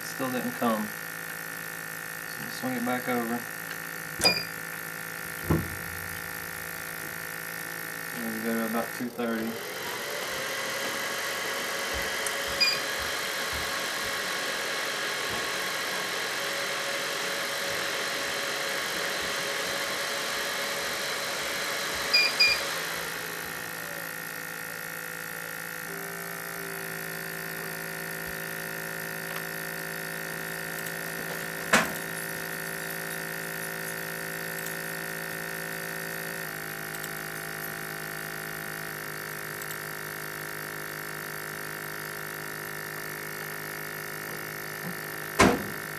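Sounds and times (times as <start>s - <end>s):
machine hum with pitched drone: 0.0s - 45.9s
short electronic beeps: 4.2s - 4.6s, 12.6s - 12.8s.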